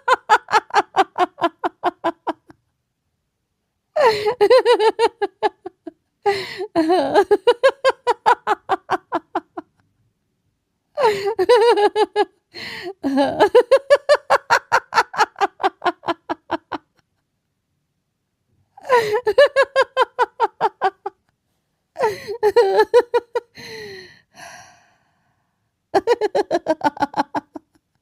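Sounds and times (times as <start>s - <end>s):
person laughing: 0.0s - 2.6s, 4.0s - 9.8s, 18.8s - 21.3s, 22.0s - 23.8s, 26.0s - 28.0s.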